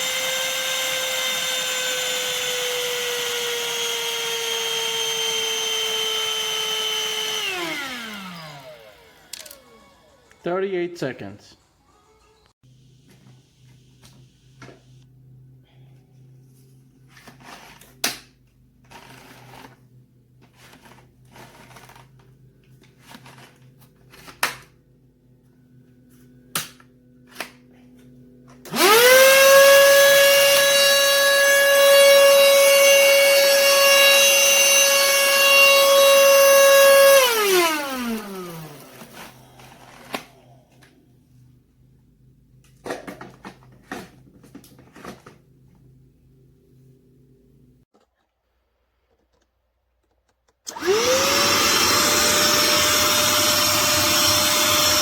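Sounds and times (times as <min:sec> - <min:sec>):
handheld vacuum motor whining: 0:00.0 - 0:10.4, 0:28.6 - 0:40.9, 0:50.7 - 0:55.0.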